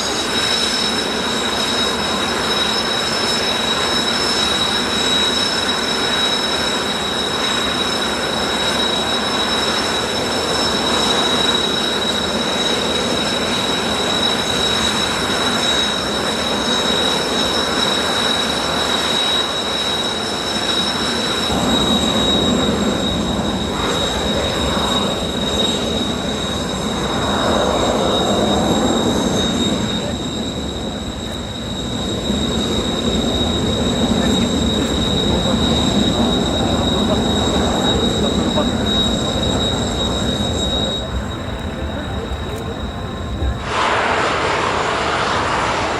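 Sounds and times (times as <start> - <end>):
jet engines whining: 0.0 - 45.9
deep rumble: 21.5 - 38.8.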